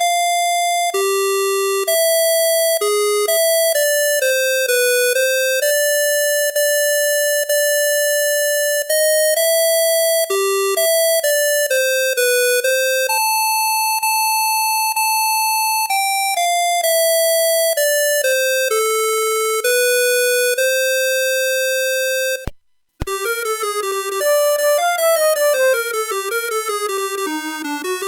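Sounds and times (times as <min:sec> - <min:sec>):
synthesized ringtone melody: 0:23.2 - 0:28.0.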